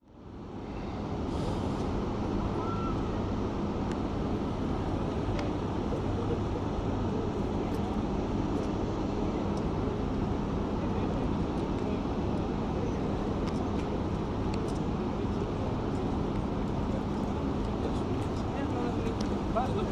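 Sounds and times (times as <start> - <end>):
city road traffic rumble: 0.3 - 19.9.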